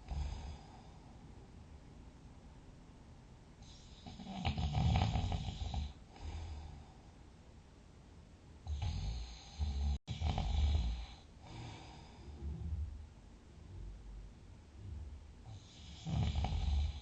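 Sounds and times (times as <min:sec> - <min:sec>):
soft breath: 0:00.0 - 0:01.6, 0:05.6 - 0:07.4, 0:10.6 - 0:13.0
person snoring loudly: 0:04.0 - 0:06.3, 0:08.7 - 0:11.9, 0:15.5 - 0:17.0.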